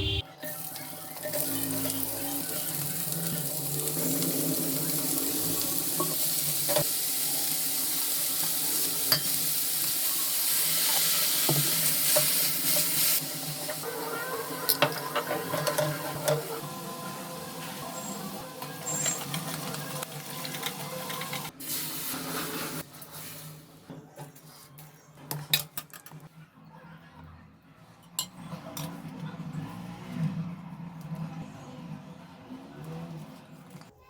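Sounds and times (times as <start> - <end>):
food sizzling in hot oil: 0.4 - 22.8.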